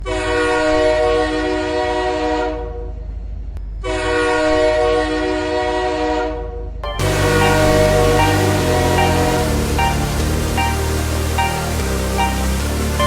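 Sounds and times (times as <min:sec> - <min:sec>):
deep air horn blasts: 0:07.0 - 0:13.0.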